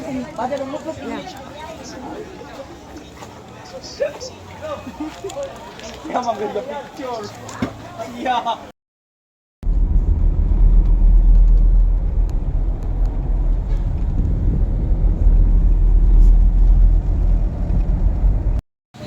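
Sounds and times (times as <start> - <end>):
vehicle interior road rumble: 9.6 - 18.6.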